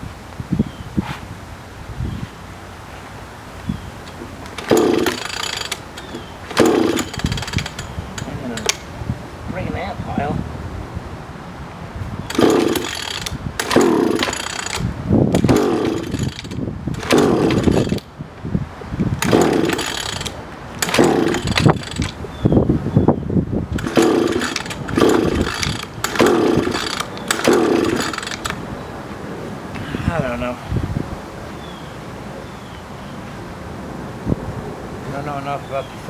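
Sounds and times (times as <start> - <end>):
outboard motor pull-cord cranking: 3.7 - 9.0, 12.2 - 18.2, 18.9 - 22.4, 23.7 - 28.8.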